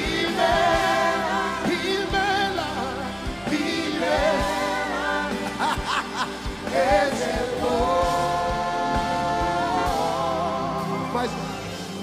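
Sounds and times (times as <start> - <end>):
gospel band playing: 0.0 - 12.0
people singing: 0.0 - 12.0.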